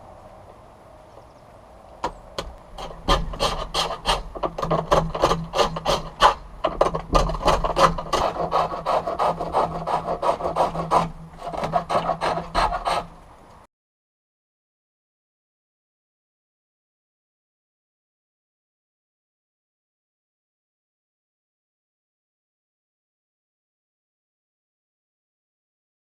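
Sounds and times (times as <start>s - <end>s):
chisel scraping spinning wood: 2.0s - 13.2s.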